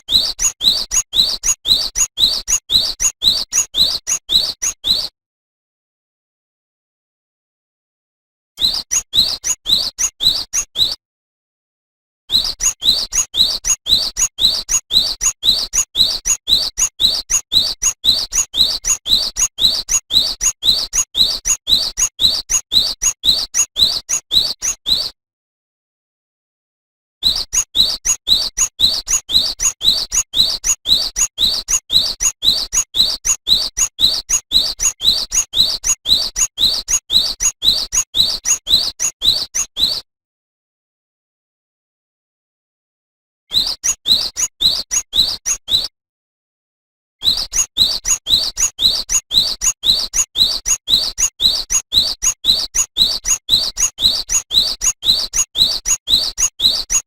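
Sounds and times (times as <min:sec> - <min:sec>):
bird singing whistled notes: 0:00.0 - 0:05.2, 0:08.6 - 0:11.0, 0:12.3 - 0:25.2, 0:27.2 - 0:40.1, 0:43.5 - 0:45.9, 0:47.2 - 0:57.0.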